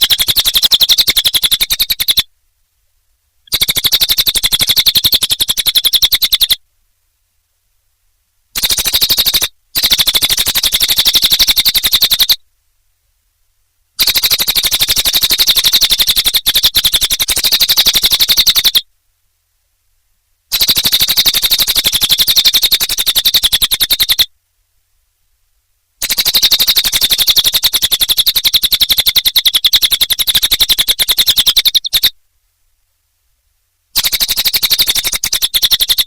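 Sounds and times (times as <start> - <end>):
songbird singing high notes: 26.0 - 32.1.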